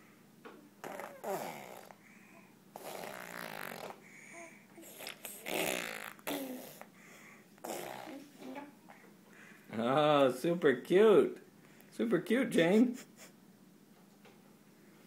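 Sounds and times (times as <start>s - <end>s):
baby vocalizing: 0.8s - 7.0s, 7.6s - 9.0s.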